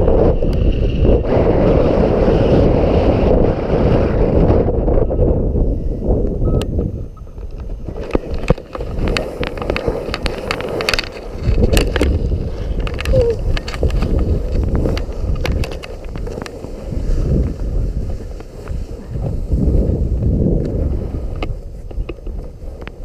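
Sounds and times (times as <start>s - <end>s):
wind buffeting microphone: 0.0s - 23.0s
clicks and rustles: 7.2s - 19.4s.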